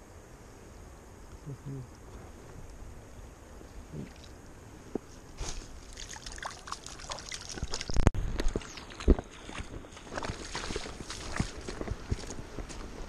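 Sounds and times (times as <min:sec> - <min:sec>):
water splashing and sloshing: 0:05.0 - 0:13.0.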